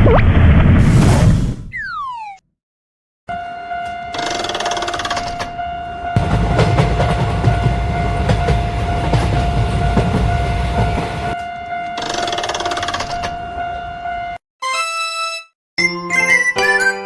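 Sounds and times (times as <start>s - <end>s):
high electronic tone: 1.7s - 2.4s
train rumbling and clattering past: 3.8s - 13.9s.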